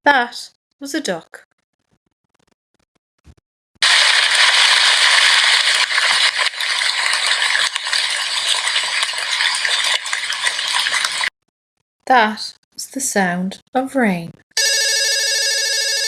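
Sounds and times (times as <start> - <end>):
rain falling: 3.8 - 11.3.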